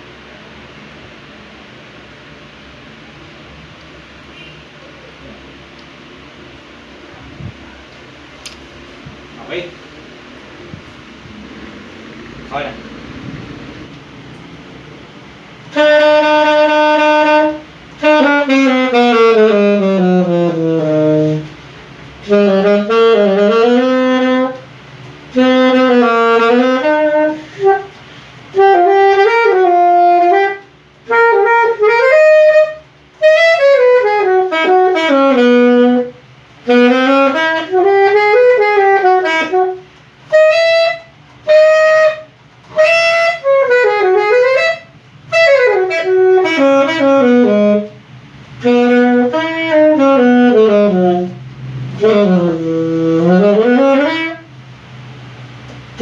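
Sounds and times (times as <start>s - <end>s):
alto saxophone playing: 15.3s - 54.7s, 55.8s - 56.0s.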